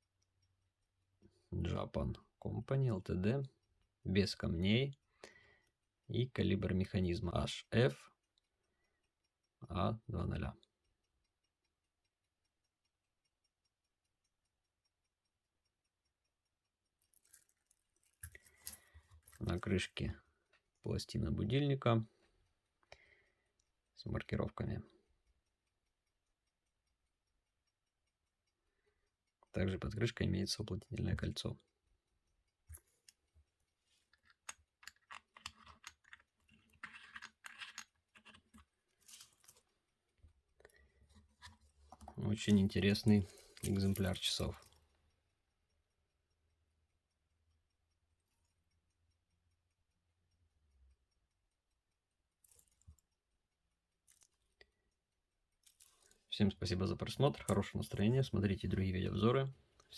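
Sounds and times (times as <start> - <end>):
rapid watch ticking: 0.0 - 59.9
small metal parts clicking and scraping: 17.0 - 20.6, 33.9 - 44.8, 52.4 - 53.2, 54.0 - 54.5, 55.6 - 56.3.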